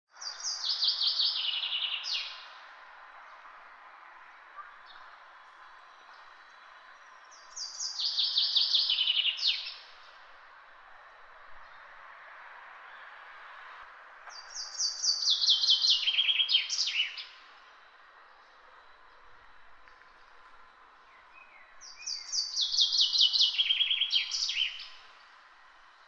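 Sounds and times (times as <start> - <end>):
songbird trilling: 14.5 - 17.3, 21.4 - 24.9.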